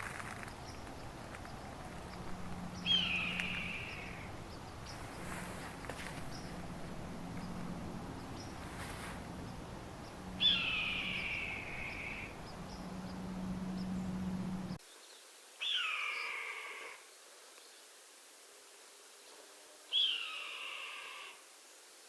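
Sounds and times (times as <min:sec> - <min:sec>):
hawk screaming: 0:10.4 - 0:12.4.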